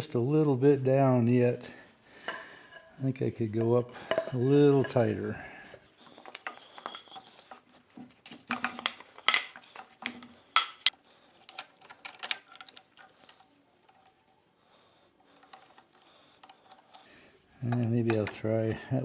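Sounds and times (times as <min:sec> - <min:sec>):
wrench clanking on steel: 0:10.6 - 0:11.0.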